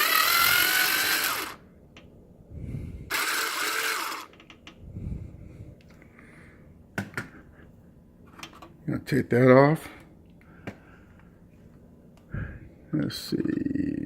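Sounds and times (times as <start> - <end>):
power drill running: 0.0 - 1.6, 3.1 - 4.3.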